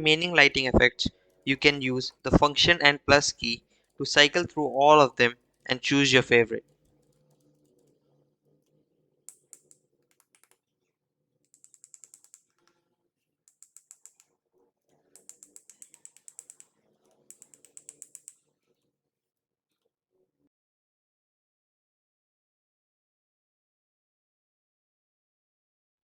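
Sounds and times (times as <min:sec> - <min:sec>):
mechanical keyboard keys clicking: 0:17.3 - 0:18.3.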